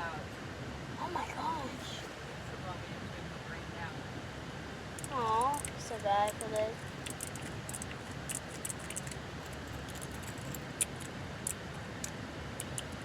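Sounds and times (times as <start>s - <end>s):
fidget toy keys clicking: 5.0s - 13.0s.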